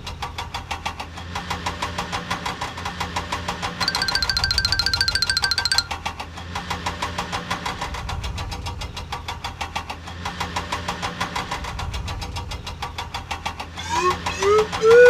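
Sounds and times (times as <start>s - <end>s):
cartoon engine chugging: 3.8s - 6.0s, 13.8s - 15.0s.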